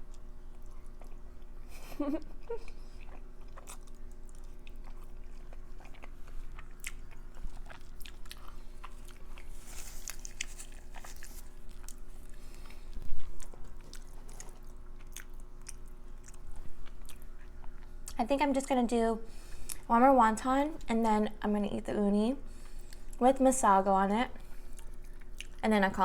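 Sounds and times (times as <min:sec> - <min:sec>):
person chewing and biting: 0:02.5 - 0:18.2.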